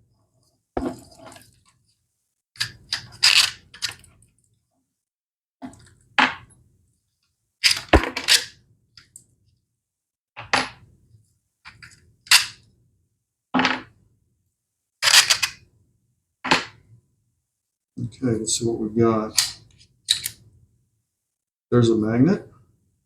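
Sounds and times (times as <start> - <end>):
plastic and metal parts clattering: 2.6 - 4.1.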